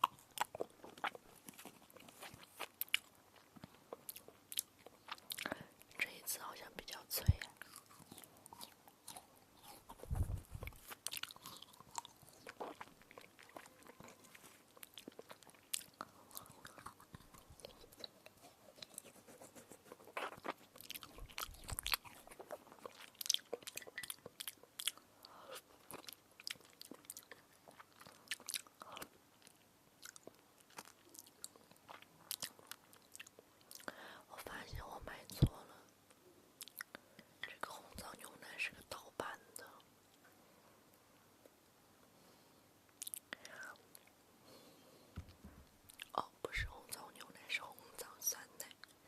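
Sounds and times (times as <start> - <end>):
crunching and chewing: 0.0 - 6.1, 7.2 - 19.2, 19.9 - 34.0, 43.0 - 43.8, 45.9 - 46.2
soft low thuds: 10.0 - 10.8.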